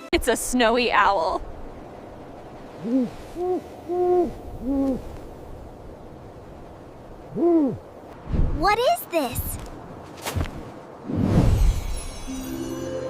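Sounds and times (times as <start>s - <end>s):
owl hooting: 2.8s - 5.2s, 7.3s - 7.8s.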